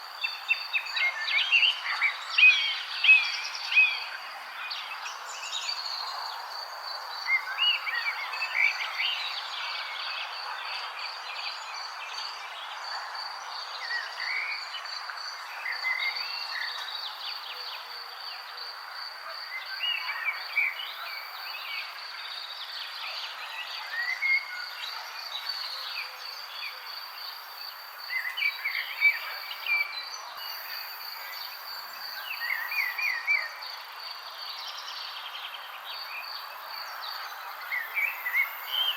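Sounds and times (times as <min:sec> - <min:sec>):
background hiss: 0:25.4 - 0:38.9.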